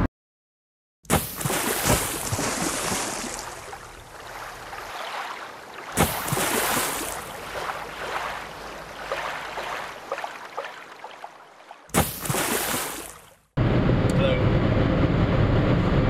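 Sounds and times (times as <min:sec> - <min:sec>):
rushing river water: 0:01.4 - 0:13.5.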